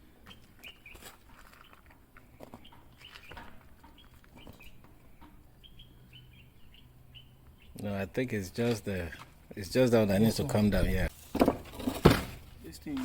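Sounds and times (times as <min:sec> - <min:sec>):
small birds chirping: 0:00.2 - 0:09.6.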